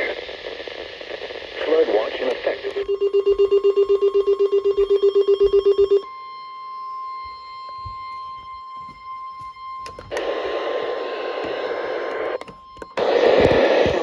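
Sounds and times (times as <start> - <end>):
radio static hiss: 0.0 - 2.9, 10.1 - 12.4, 13.0 - 14.0
rapid pulsing electronic beep: 2.9 - 6.1.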